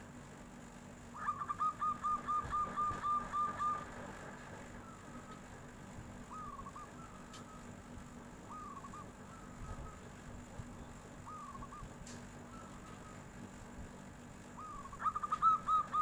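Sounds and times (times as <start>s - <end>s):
steady low hum: 0.0s - 16.0s
dove cooing: 1.2s - 7.8s, 8.4s - 10.2s, 11.2s - 13.3s, 14.6s - 16.0s.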